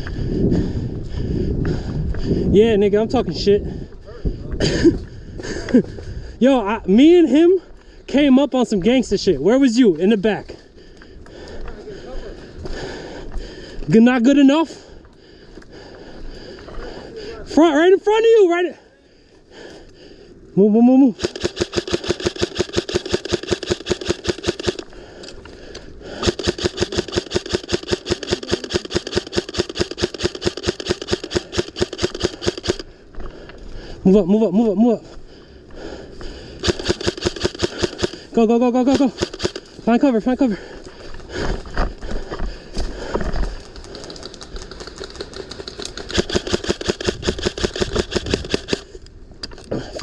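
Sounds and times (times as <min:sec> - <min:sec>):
airsoft gun firing full auto: 0:21.2 - 0:24.8, 0:26.2 - 0:32.9, 0:36.6 - 0:38.3, 0:38.9 - 0:39.7, 0:45.1 - 0:48.9
gearbox whir: 0:45.9 - 0:48.8.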